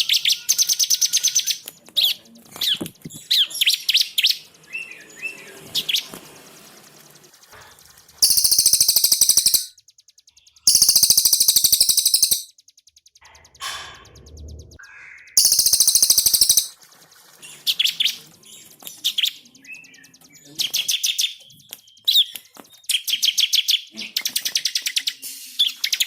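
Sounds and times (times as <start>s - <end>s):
short high bird chirps: 8.2s - 9.7s, 10.7s - 12.5s, 15.4s - 16.8s
songbird rattling trills: 8.2s - 9.7s, 10.7s - 12.5s, 15.4s - 16.8s.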